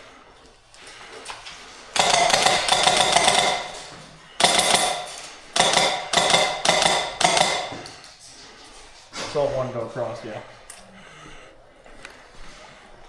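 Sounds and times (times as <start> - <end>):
airsoft gun firing bursts: 1.9 - 8.1.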